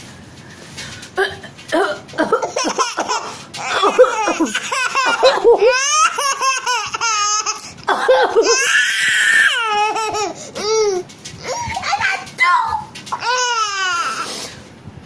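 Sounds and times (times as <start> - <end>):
baby laughing: 2.1 - 12.3, 13.1 - 14.2.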